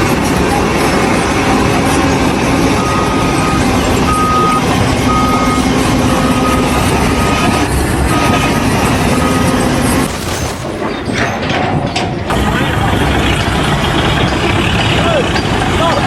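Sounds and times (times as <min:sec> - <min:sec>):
engine and machinery noise: 0:00.0 - 0:16.0
reversing alarm beeping: 0:00.5 - 0:10.0.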